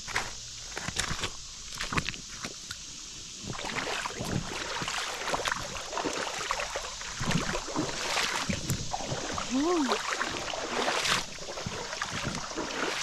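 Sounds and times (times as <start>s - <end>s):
footsteps wading through water: 0.2s - 2.8s, 3.4s - 13.0s.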